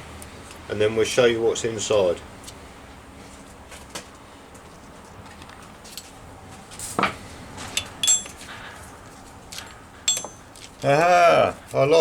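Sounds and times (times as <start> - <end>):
socket and ratchet clinking: 7.8 - 8.4, 9.6 - 10.5.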